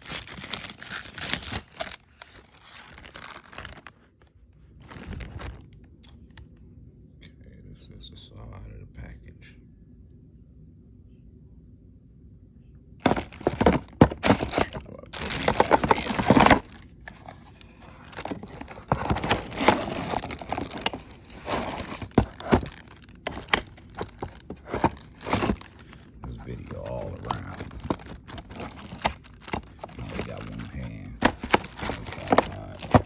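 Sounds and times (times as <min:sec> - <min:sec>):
plastic packaging crinkling: 0:00.0 - 0:05.8, 0:13.0 - 0:33.0
handling clicks and knocks: 0:13.0 - 0:17.3, 0:17.9 - 0:25.7, 0:31.2 - 0:33.0.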